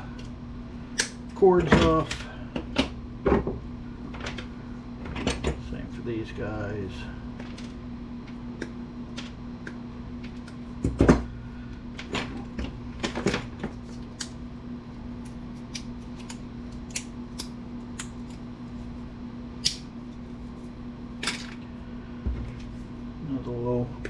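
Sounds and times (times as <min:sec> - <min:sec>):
steady low hum: 0:00.0 - 0:24.0
wire cutters snipping: 0:15.2 - 0:18.4, 0:19.6 - 0:19.9.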